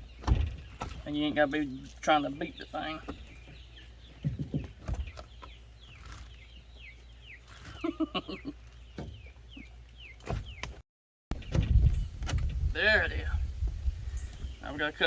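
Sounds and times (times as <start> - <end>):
dull knocks: 0.0 - 1.4, 3.0 - 5.6
birds chirping: 0.0 - 15.0.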